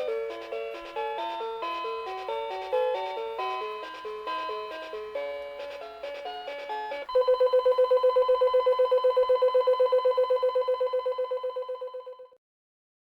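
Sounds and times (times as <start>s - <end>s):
electronic alarm melody: 7.1s - 12.4s
rapidly pulsing beep: 7.1s - 12.4s.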